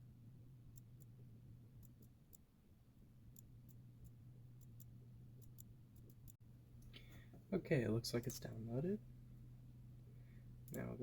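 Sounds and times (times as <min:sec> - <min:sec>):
low steady hum: 0:00.0 - 0:11.0
computer mouse clicks: 0:03.3 - 0:07.0.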